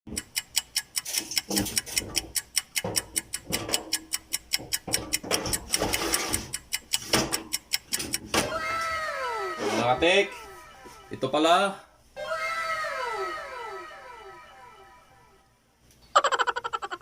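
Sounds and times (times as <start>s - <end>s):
rapid regular ticking: 0.1s - 8.3s.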